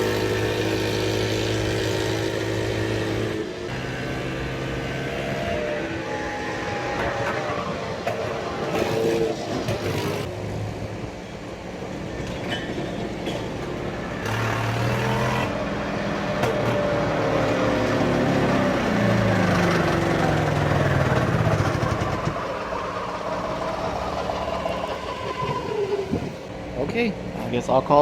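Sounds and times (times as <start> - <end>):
golf cart engine running: 13.6 - 26.8.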